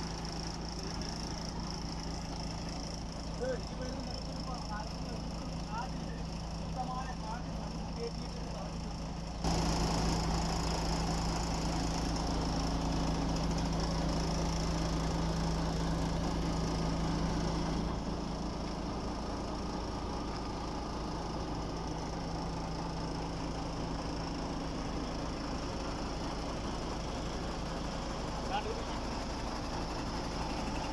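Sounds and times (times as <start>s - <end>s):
truck diesel engine running: 0.0s - 30.9s.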